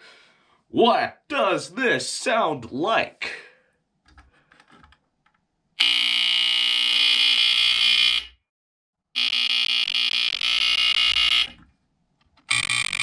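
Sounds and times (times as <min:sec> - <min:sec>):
smoke alarm buzzing: 0:05.8 - 0:08.4, 0:09.2 - 0:11.6, 0:12.5 - 0:13.0.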